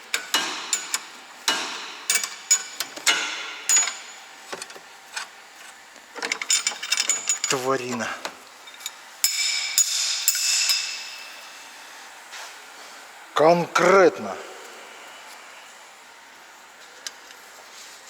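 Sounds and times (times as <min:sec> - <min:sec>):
metal tools clicking and knocking: 0:00.1 - 0:05.3, 0:06.2 - 0:08.0, 0:08.7 - 0:11.2.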